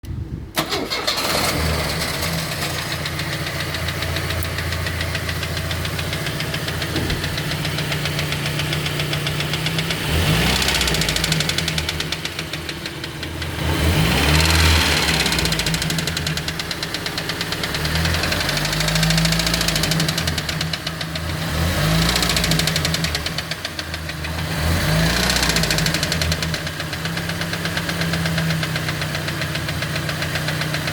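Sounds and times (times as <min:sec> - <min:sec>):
petrol engine revving: 0:00.6 - 0:30.9
metallic engine knock: 0:03.4 - 0:10.0.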